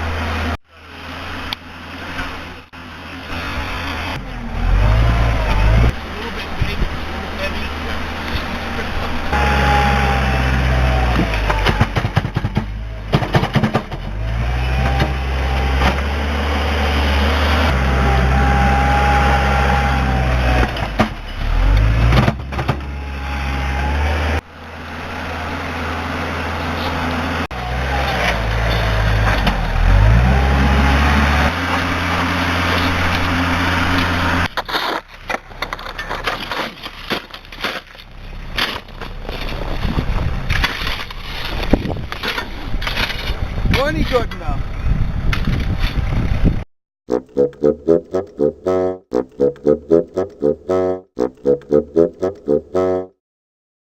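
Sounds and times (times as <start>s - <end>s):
machine engine revving: 2.0s - 35.0s
crunching and scraping: 4.9s - 13.9s, 26.4s - 44.4s.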